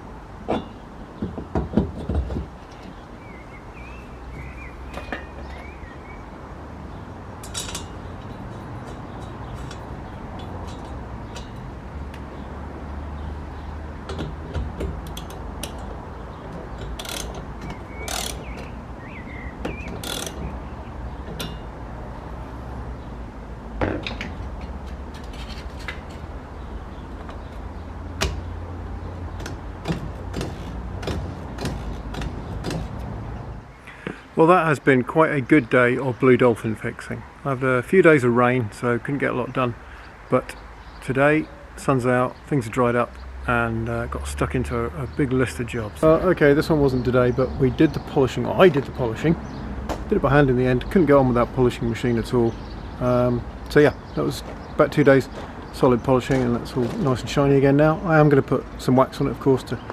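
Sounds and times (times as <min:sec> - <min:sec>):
clicks and knocks of hand work: 0:00.5 - 0:03.0, 0:14.0 - 0:18.8, 0:19.6 - 0:20.6, 0:29.2 - 0:33.3, 0:56.3 - 0:57.2.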